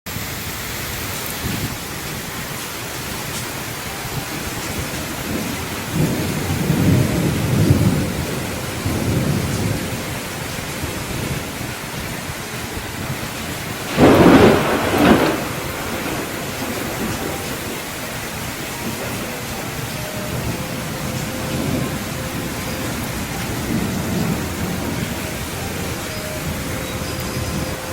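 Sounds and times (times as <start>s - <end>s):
steady heavy rain: 0.1s - 27.9s
low thunder rumbling: 1.2s - 27.9s
sharp thunderclap: 4.5s - 18.0s.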